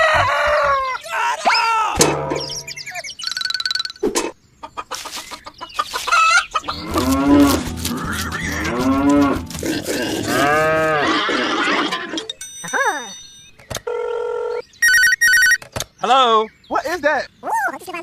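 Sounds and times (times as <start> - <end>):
animal calls rising and falling: 6.6 - 12.3.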